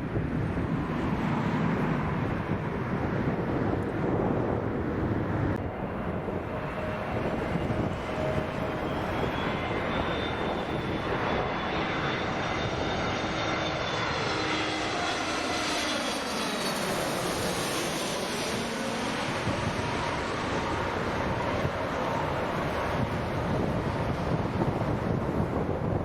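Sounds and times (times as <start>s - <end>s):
jet airliner engines passing: 0.0s - 26.0s.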